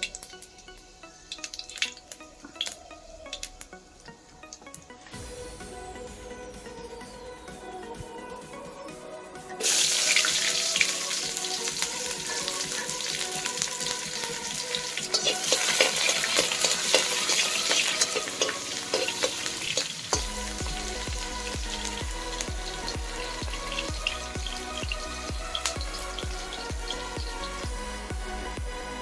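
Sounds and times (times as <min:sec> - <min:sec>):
food sizzling in hot oil: 0:00.0 - 0:04.9, 0:09.6 - 0:27.8
soft background music: 0:00.0 - 0:29.0.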